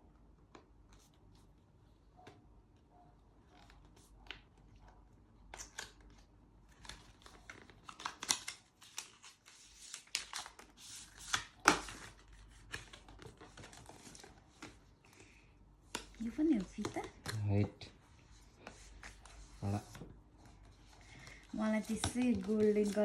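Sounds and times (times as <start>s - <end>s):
box packaging crinkling and ripping: 5.6s - 14.9s.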